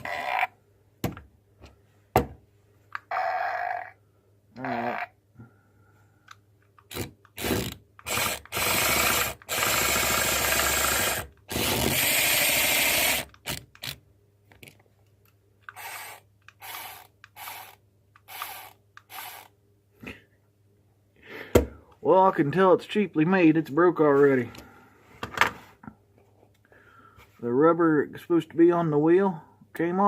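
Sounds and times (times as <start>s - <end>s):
toy car motor whirring: 6.8s - 14.0s, 15.7s - 19.5s.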